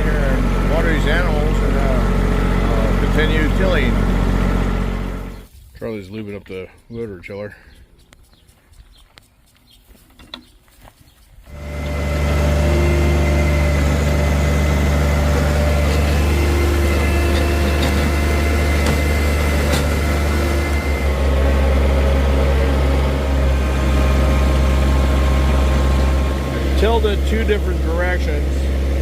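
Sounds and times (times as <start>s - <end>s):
diesel engine running: 0.0s - 5.5s, 11.5s - 29.0s.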